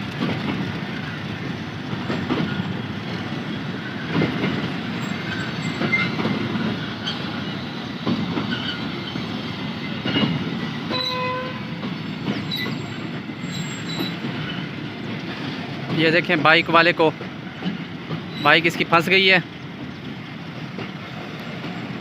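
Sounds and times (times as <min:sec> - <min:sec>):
train wheels clacking over rail joints: 0:00.0 - 0:22.0
train horn: 0:10.9 - 0:11.8.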